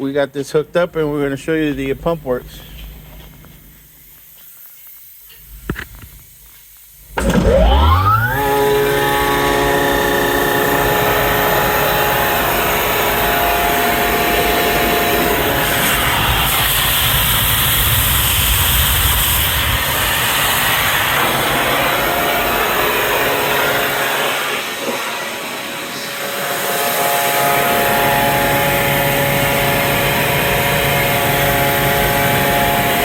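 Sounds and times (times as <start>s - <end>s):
air compressor whine and hum: 0.0s - 33.0s
air hiss: 0.4s - 7.2s, 9.6s - 33.0s.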